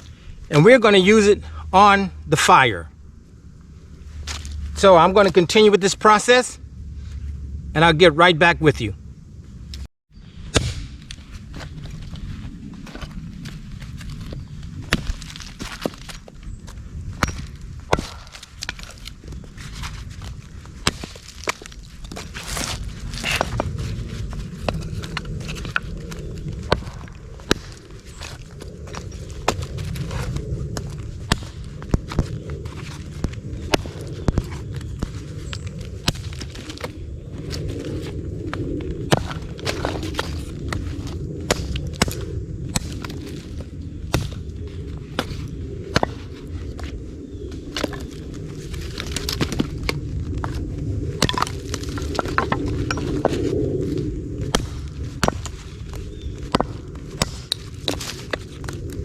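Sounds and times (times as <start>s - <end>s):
steady low rumble: 0.0s - 59.0s
hatchet chopping wood: 17.2s - 18.8s.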